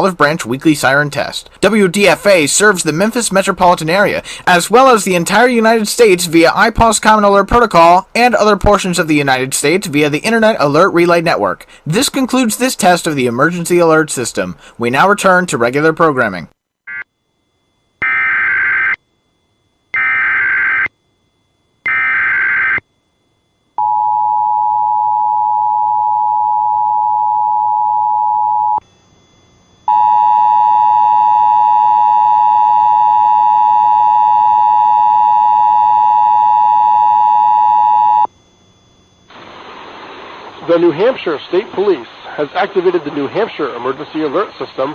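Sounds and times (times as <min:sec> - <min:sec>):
warbling data bursts: 0:18.0 - 0:19.0, 0:19.9 - 0:22.8, 0:28.6 - 0:44.9.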